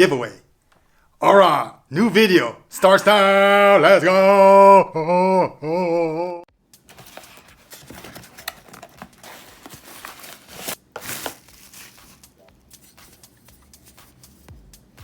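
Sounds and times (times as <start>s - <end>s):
crinkling rustles: 6.8s - 14.4s.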